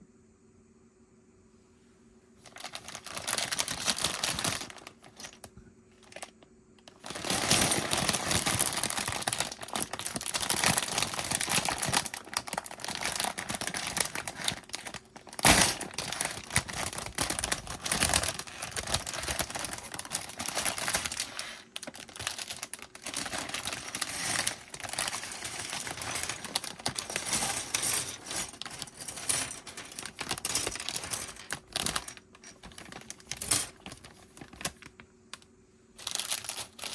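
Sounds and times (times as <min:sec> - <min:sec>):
plastic bag crinkling: 0:02.4 - 0:35.1, 0:36.0 - 0:36.9
plastic bricks clicking and rattling: 0:06.8 - 0:34.8.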